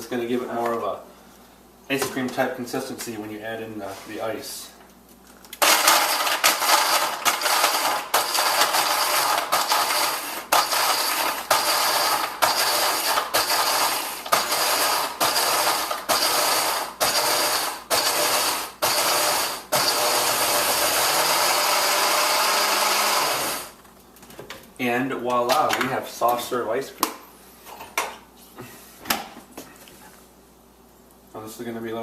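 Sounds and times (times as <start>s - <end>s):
blender crushing ice: 5.6s - 23.8s.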